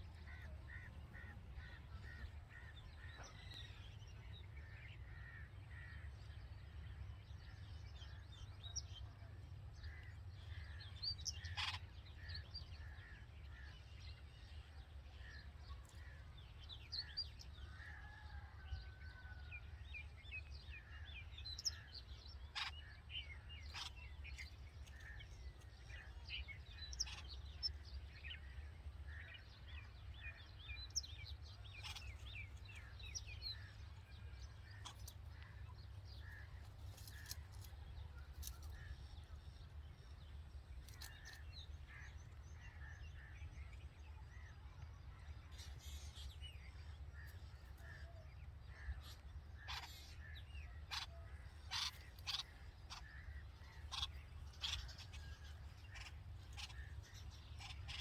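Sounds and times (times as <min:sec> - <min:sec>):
birds chirping: 0:00.0 - 0:14.2, 0:20.4 - 0:58.0
sharp bird calls: 0:10.6 - 0:11.9, 0:23.6 - 0:26.2, 0:29.3 - 0:39.4, 0:47.1 - 0:58.0.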